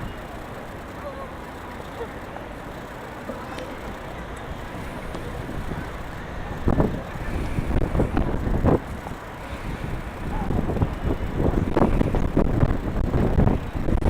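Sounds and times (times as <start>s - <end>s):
wind buffeting microphone: 3.6s - 14.0s.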